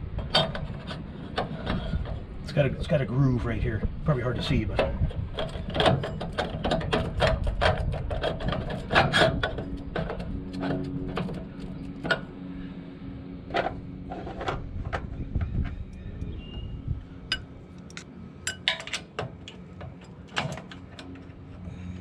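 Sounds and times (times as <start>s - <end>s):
steady low hum: 0.0s - 22.0s
sharp mechanical clicks and knocks: 4.5s - 12.3s.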